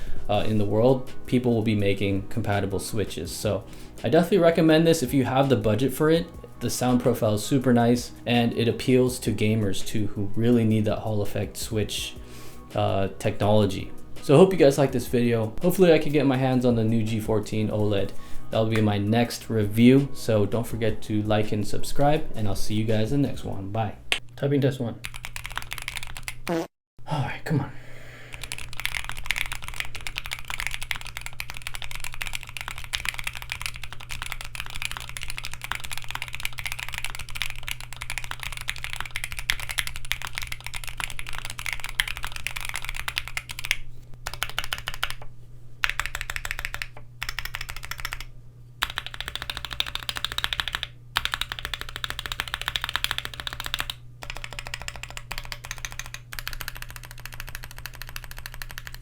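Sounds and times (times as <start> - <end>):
keyboard typing: 25.0 - 26.6, 28.3 - 45.2, 45.8 - 59.0.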